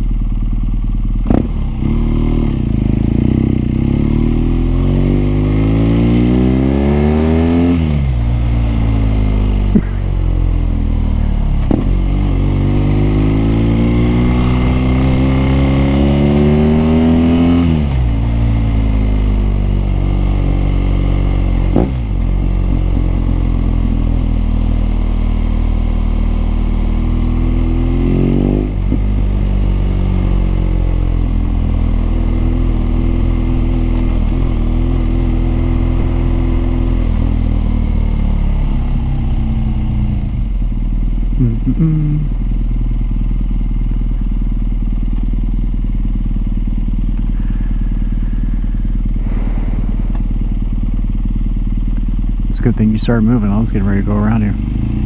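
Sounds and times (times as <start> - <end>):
motorcycle engine accelerating: 0.0 - 55.0.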